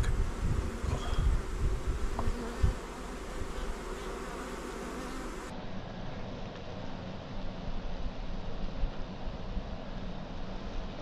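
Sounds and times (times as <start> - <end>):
honeybees buzzing: 0.0 - 5.5.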